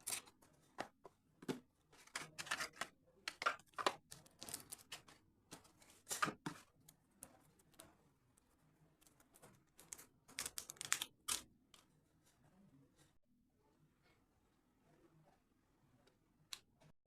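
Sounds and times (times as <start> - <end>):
hands handling packaging: 0.0 - 6.9.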